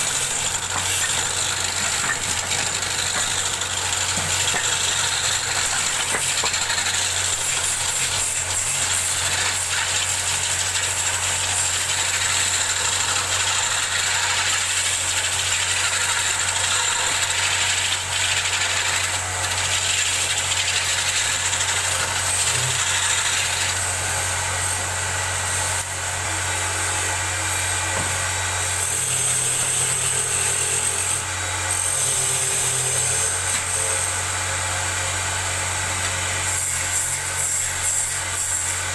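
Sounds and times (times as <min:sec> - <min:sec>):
turning tool hissing on wood: 0:00.0 - 0:24.9
wood lathe motor humming: 0:00.0 - 0:38.9.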